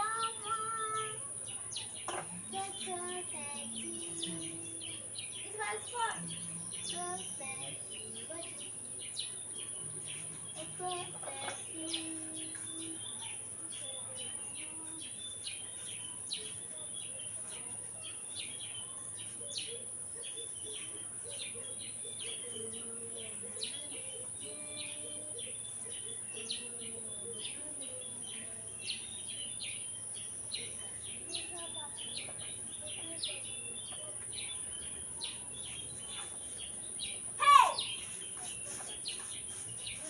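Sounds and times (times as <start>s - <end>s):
constant high-pitched whine: 0.0s - 40.0s
small birds chirping: 0.0s - 40.0s.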